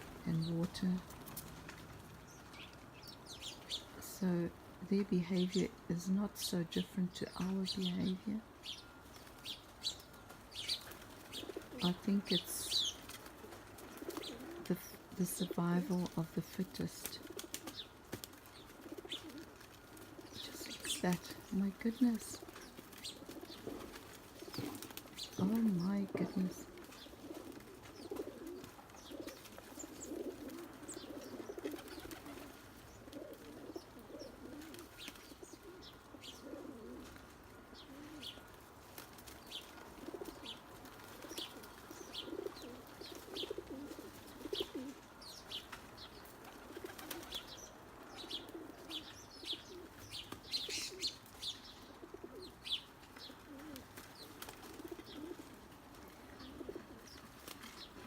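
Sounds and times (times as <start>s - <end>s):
doves cooing: 0.0s - 58.0s
small birds chirping: 0.0s - 58.0s
wings flapping: 9.1s - 11.9s, 12.7s - 14.7s, 17.1s - 35.6s, 38.2s - 44.9s, 45.6s - 47.6s, 53.2s - 58.0s.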